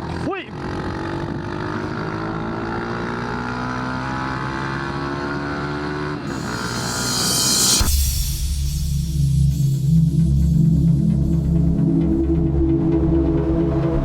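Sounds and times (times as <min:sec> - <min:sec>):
loud hiss: 0:06.3 - 0:11.0.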